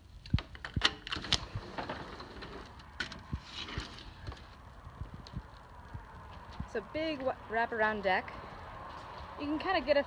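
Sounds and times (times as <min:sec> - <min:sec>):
footsteps: 0:03.2 - 0:07.4, 0:08.2 - 0:09.8.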